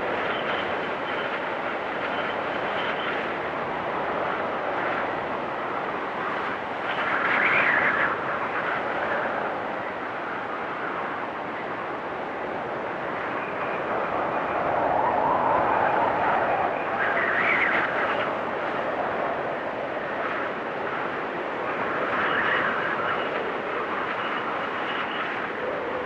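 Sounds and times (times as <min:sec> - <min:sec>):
storm wind blowing hard: 0:00.0 - 0:26.0.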